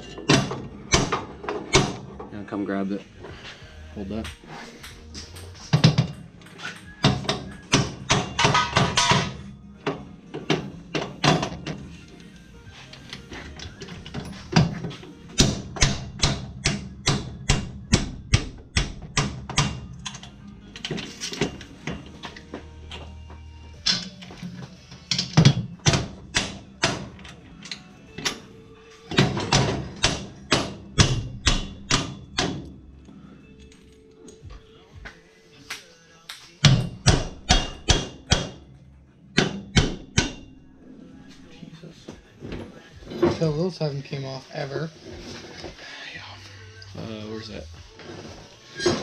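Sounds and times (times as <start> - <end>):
faint music: 0.0 - 49.0
hammer striking metal: 0.3 - 2.1, 4.2 - 9.4, 15.3 - 20.0, 25.1 - 27.1, 29.1 - 32.7, 36.6 - 38.6, 39.3 - 40.6.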